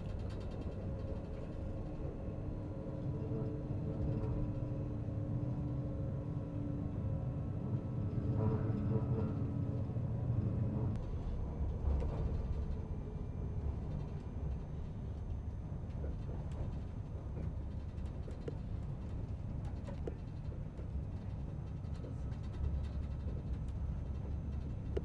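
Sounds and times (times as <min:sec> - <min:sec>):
faint clicks and rattles: 0:00.0 - 0:02.1, 0:13.6 - 0:25.0
train cabin rumble: 0:00.0 - 0:25.0.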